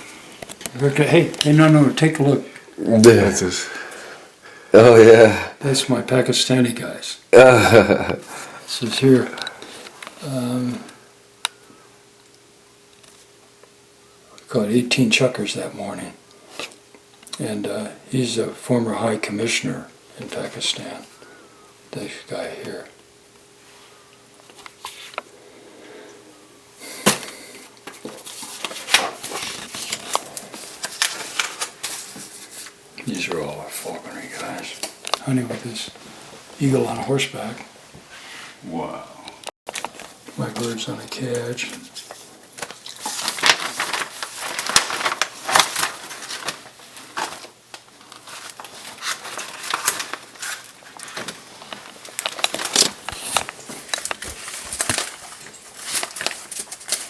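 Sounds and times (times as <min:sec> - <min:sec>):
papers rustling and clicking: 0:27.0 - 0:33.2, 0:39.7 - 0:57.0.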